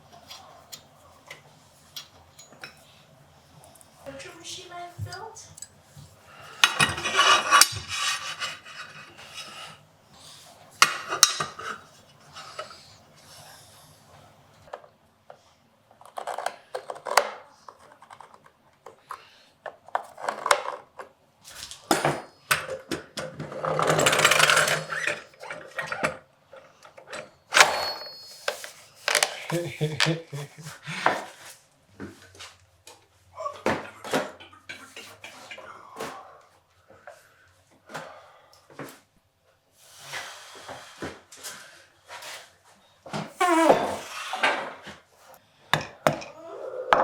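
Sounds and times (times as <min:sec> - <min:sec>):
tool scraping wood: 0:06.9 - 0:09.8.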